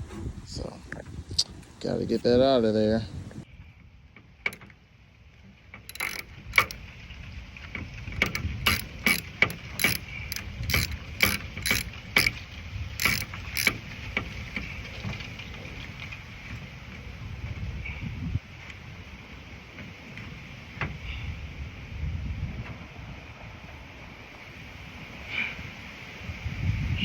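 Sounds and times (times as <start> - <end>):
sharp mechanical clicks: 5.9 - 6.9, 8.1 - 13.8.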